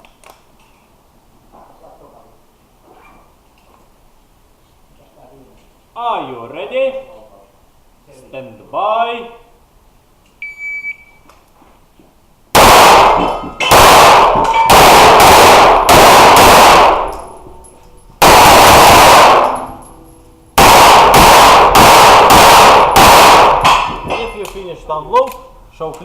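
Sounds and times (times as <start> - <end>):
shot timer beep: 10.4 - 11.2
pistol shots echoing: 12.6 - 17.6, 18.2 - 20.0, 20.6 - 24.3.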